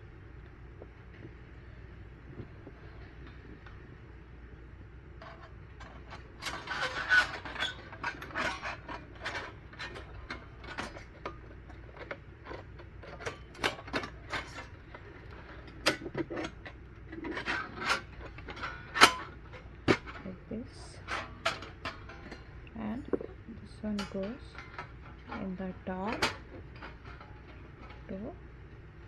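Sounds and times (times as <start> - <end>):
metal grill parts clinking: 5.2 - 28.4.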